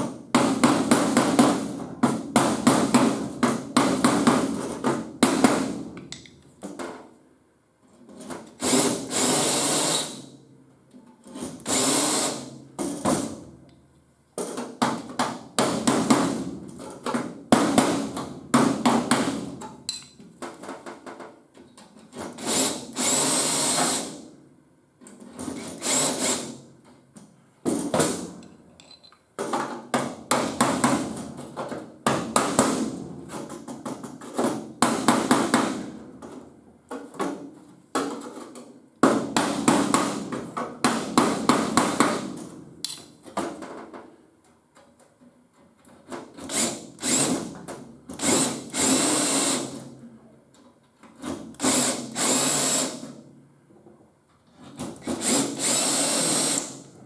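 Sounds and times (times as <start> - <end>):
power drill running: 22.5 - 24.1, 46.5 - 47.4, 48.2 - 49.7, 51.6 - 53.0, 55.0 - 56.8.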